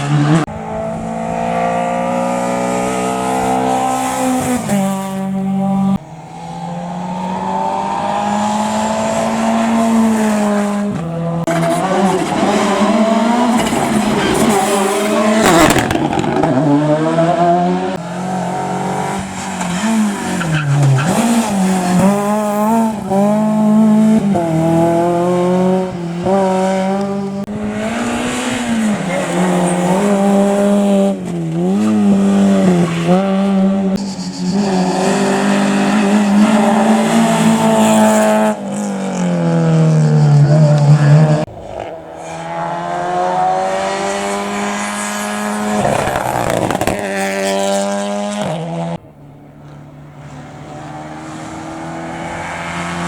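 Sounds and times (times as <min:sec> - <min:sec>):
rally car engines revving: 0:00.0 - 0:53.0
tyre squeal: 0:33.9 - 0:36.9.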